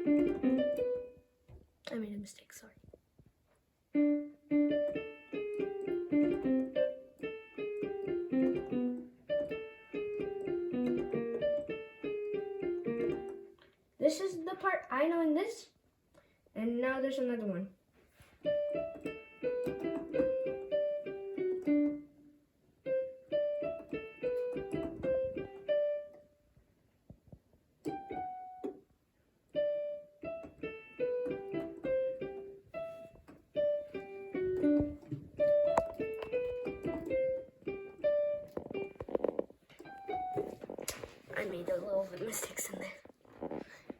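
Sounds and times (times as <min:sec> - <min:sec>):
electronic keyboard piano melody: 0:00.0 - 0:01.5, 0:03.8 - 0:13.8, 0:18.4 - 0:41.9.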